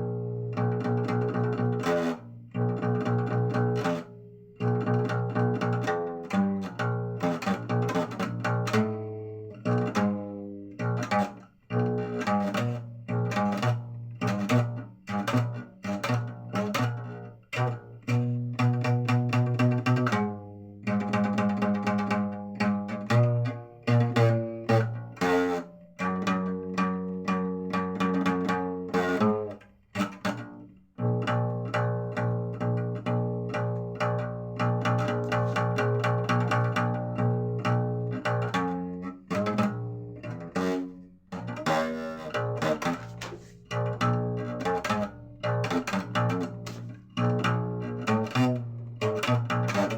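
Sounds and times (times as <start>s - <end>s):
low held bass: 0.0s - 11.1s, 30.3s - 49.9s
plucked string notes: 0.0s - 49.9s.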